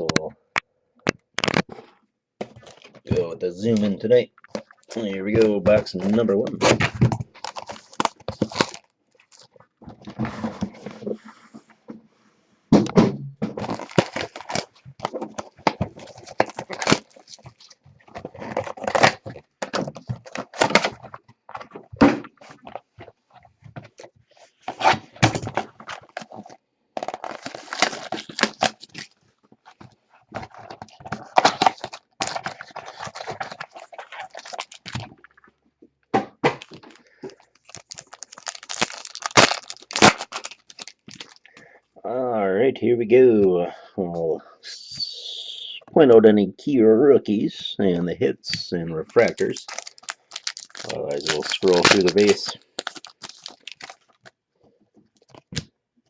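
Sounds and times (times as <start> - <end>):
cardboard and wrappers tearing: 4.5 - 9.5, 13.6 - 22.8, 24.7 - 35.4, 36.6 - 41.5, 49.1 - 54.3
box and packs knocking: 12.7 - 17.2.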